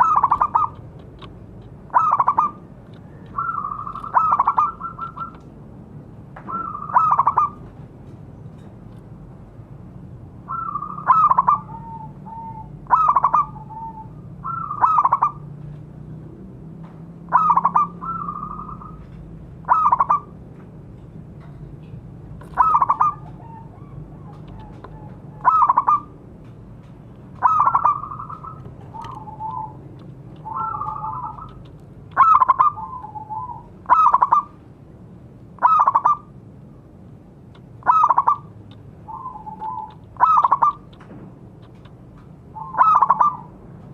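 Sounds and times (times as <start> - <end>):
doves cooing: 0.0 - 1.2, 1.8 - 5.6, 6.4 - 7.8, 10.5 - 15.5, 17.3 - 20.4, 22.4 - 26.3, 27.3 - 34.6, 35.6 - 36.3, 37.8 - 41.9, 42.5 - 43.8.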